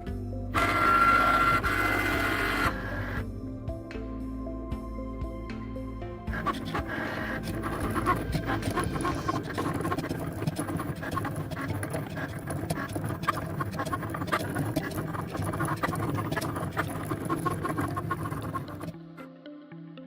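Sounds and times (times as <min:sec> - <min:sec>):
cutting machine whirring and ticking: 0:00.6 - 0:03.2, 0:06.3 - 0:19.0.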